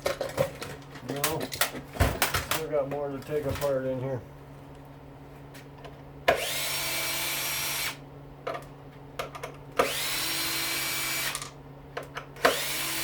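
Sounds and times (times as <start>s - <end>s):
power drill whine: 6.3s - 8.0s, 9.8s - 11.5s, 12.4s - 13.0s.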